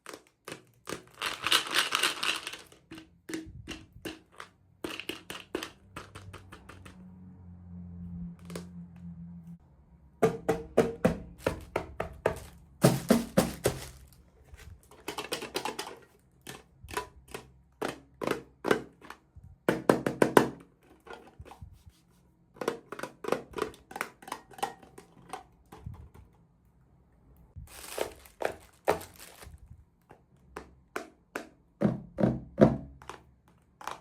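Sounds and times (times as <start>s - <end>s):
plastic packaging crinkling: 0.0s - 3.0s, 12.3s - 15.9s, 27.6s - 29.7s
toy pieces clicking: 0.0s - 3.0s, 4.3s - 7.0s.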